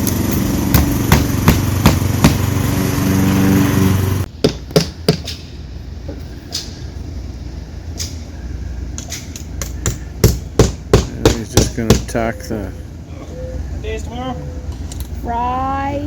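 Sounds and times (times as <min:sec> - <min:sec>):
small engine running: 0:00.0 - 0:04.3
hammer driving nails into siding: 0:00.7 - 0:02.4, 0:04.4 - 0:05.4, 0:09.6 - 0:12.1
sharp knocks: 0:00.7 - 0:02.5, 0:04.4 - 0:05.6, 0:09.0 - 0:12.2.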